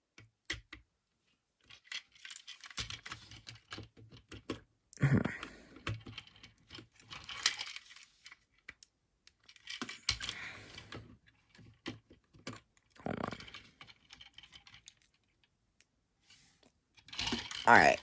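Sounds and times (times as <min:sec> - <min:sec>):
plastic toy parts clicking: 0:01.6 - 0:04.7, 0:05.8 - 0:11.0, 0:17.0 - 0:18.0.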